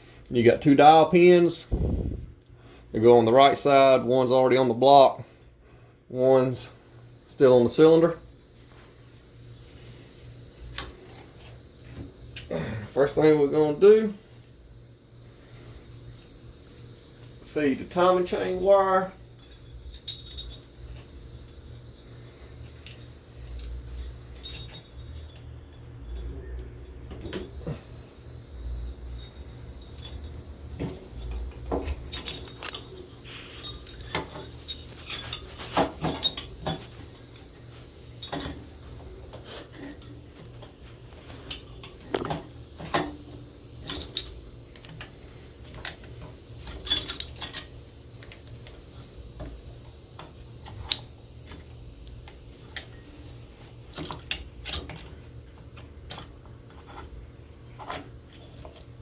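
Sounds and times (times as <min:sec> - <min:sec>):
low steady hum: 0:00.0 - 0:59.0
metallic clinks of engine parts: 0:18.8 - 0:21.0, 0:22.6 - 0:27.6, 0:29.2 - 0:33.0, 0:33.6 - 0:37.4, 0:46.6 - 0:48.8.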